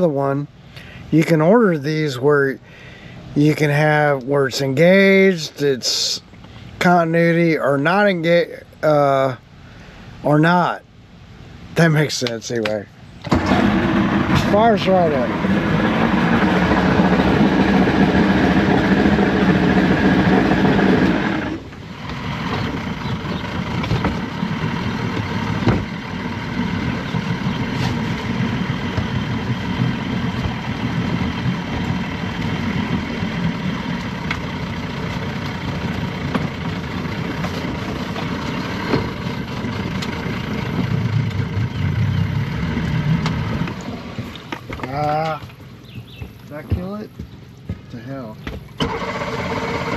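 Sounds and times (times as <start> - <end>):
outboard motor running: 13.2 - 49.9.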